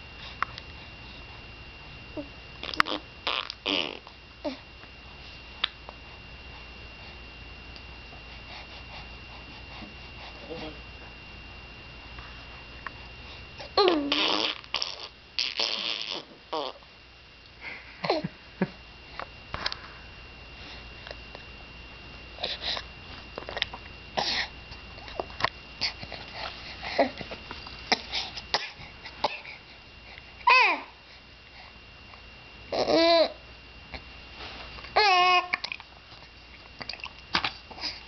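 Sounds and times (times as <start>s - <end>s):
baby blowing raspberries: 2.6s - 4.1s, 13.8s - 16.8s
baby babbling: 13.8s - 16.8s, 35.0s - 35.6s.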